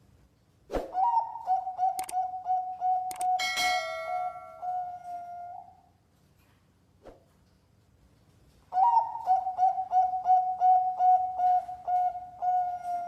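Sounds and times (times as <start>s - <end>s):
dove cooing: 0.9s - 5.8s, 8.7s - 13.0s
bright metallic ring: 3.3s - 5.2s.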